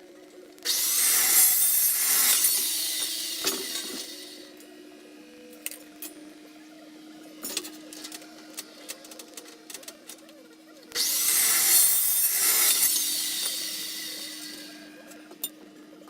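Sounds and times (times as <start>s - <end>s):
saw cutting steel tubing: 0.6s - 4.6s, 10.9s - 15.5s.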